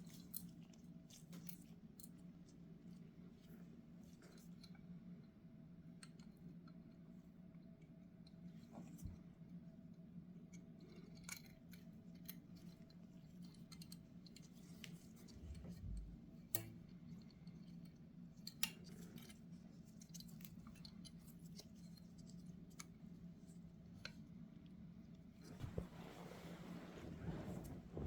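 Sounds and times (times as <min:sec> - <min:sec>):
steady low hum: 0:15.0 - 0:18.3, 0:24.9 - 0:28.0.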